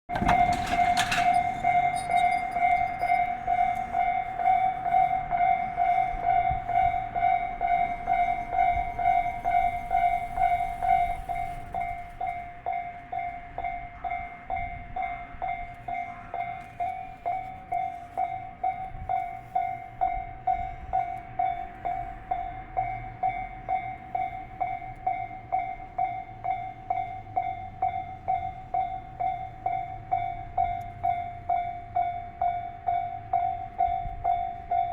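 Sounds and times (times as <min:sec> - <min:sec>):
train rushing past: 0:00.1 - 0:12.4
level crossing bell clanging: 0:00.1 - 0:34.9.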